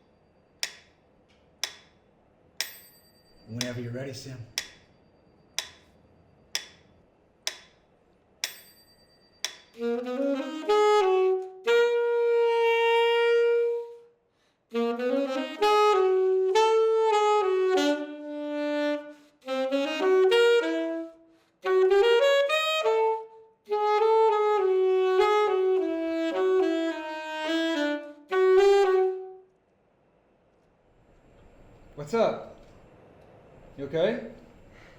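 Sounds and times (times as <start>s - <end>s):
sharp clicks: 0.6s - 2.0s, 4.5s - 4.9s, 5.6s - 5.9s, 6.6s - 8.7s
solo saxophone playing jazz: 9.7s - 29.6s.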